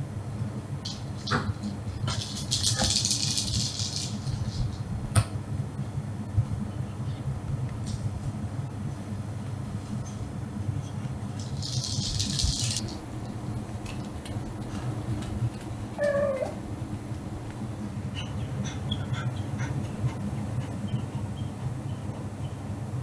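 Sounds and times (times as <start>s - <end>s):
steady low hum: 3.3s - 23.0s
cat meowing: 16.0s - 16.6s.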